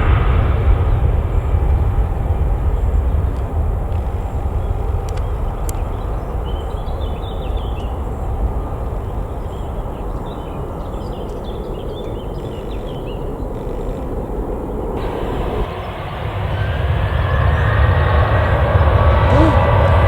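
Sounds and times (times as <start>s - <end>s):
jet engines rumbling: 0.0s - 20.0s
rising engine whine: 14.6s - 20.0s.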